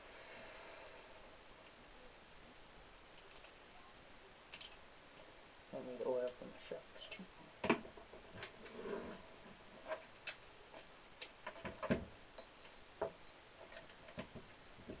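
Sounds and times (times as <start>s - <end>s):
small parts and tools clicking: 3.2s - 3.6s, 4.5s - 4.8s.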